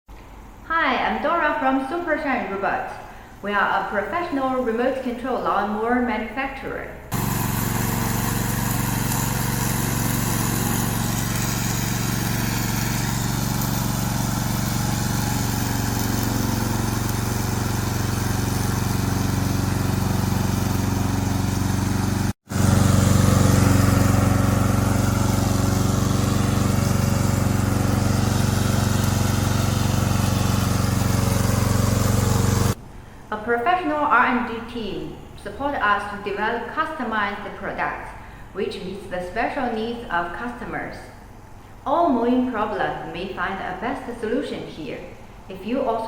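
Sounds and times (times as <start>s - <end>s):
lawn mower engine running: 7.1s - 32.8s.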